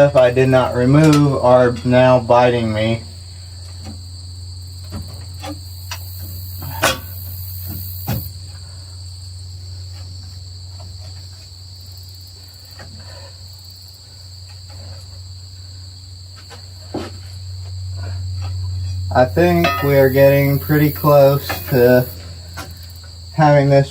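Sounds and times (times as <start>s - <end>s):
low hum: 14.6s - 23.9s
high-pitched whine: 17.2s - 23.9s.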